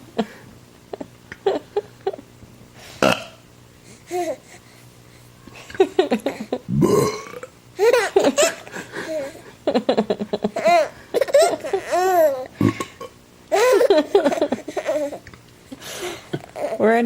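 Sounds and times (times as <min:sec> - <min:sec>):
person burping: 0:03.0 - 0:03.4, 0:06.7 - 0:07.6, 0:12.6 - 0:13.1
baby laughing: 0:07.8 - 0:12.6, 0:13.5 - 0:15.2, 0:16.4 - 0:16.8.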